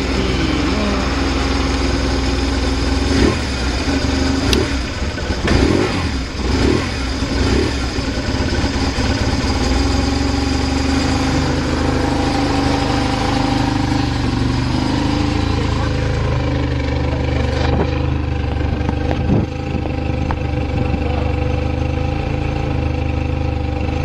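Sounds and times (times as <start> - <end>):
motorcycle engine idling: 0.0 - 24.0.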